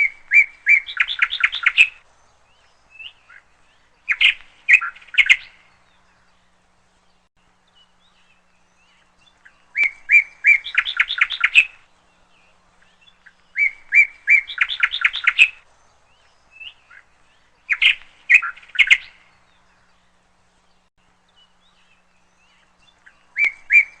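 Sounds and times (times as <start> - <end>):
bird chirping rapidly: 0.0 - 6.3, 7.2 - 20.2, 20.8 - 24.0.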